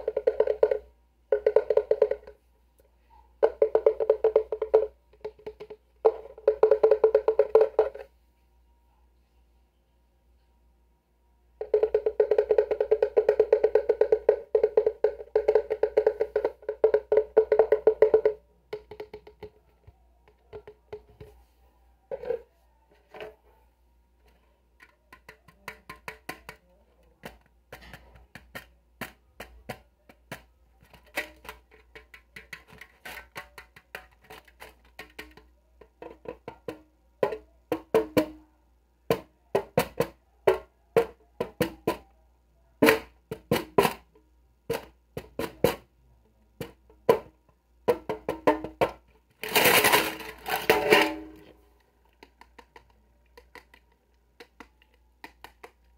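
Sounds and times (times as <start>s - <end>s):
fast tapping on hollow object: 0.0s - 2.4s, 3.4s - 8.1s, 11.6s - 21.4s, 24.4s - 38.5s, 39.1s - 42.1s, 46.6s - 51.5s, 52.1s - 55.9s
scattered clicks and taps: 47.9s - 55.9s.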